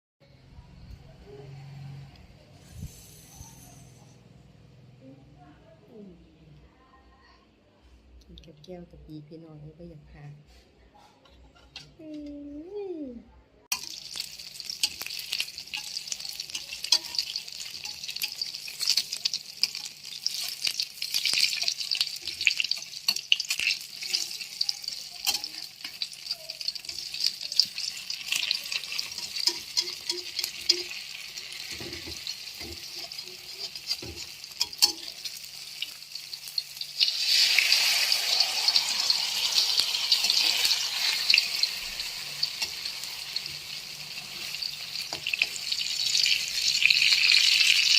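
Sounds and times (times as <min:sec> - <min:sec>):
hot oil sizzling in a pan: 0:13.7 - 0:47.9.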